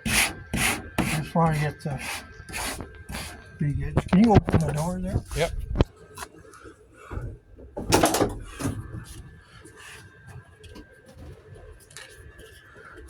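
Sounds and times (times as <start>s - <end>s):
truck door latch and hinge: 7.2s - 8.8s.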